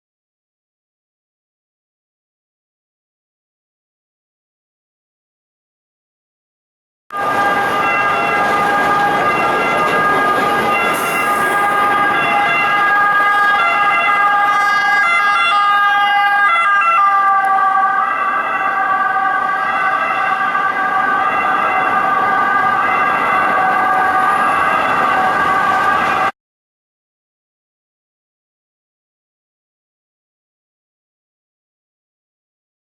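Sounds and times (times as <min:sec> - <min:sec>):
road noise: 0:07.1 - 0:26.4
two-tone ambulance siren: 0:07.1 - 0:26.4.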